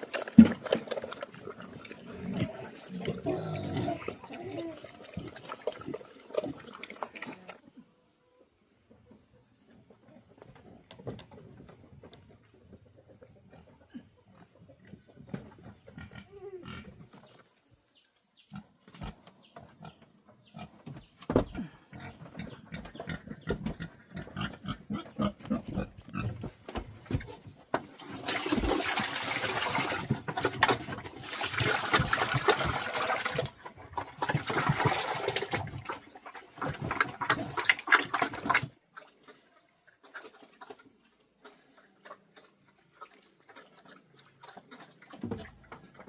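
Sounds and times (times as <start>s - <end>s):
pigs vocalising: 0.0s - 7.9s, 12.9s - 17.4s, 21.5s - 26.5s.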